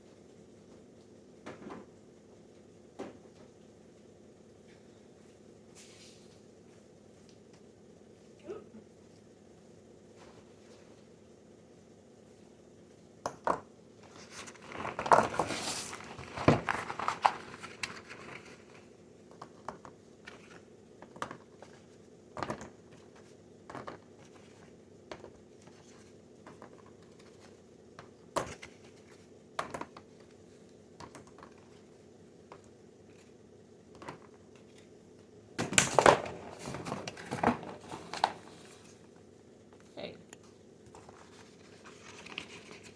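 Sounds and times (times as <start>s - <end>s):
faint steady hum: 0.0s - 42.9s
plastic packaging crinkling: 14.3s - 18.9s.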